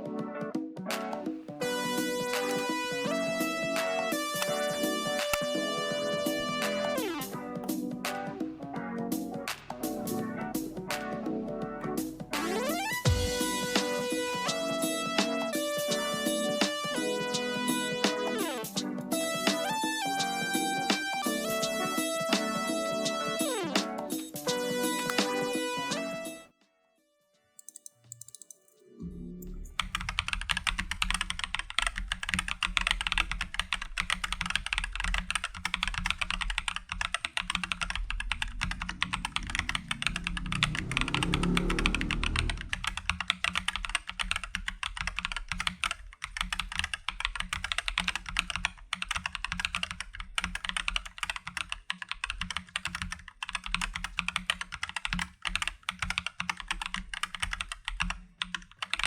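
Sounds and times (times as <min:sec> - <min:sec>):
mechanical keyboard typing: 0:02.2 - 0:08.4, 0:27.6 - 0:28.7, 0:29.8 - 0:59.0.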